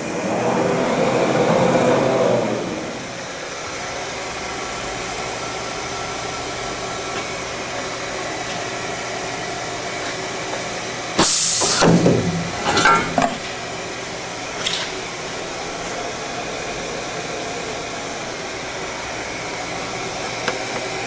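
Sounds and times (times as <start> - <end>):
machining centre humming: 0.0 - 21.0
loud hiss: 11.1 - 12.7.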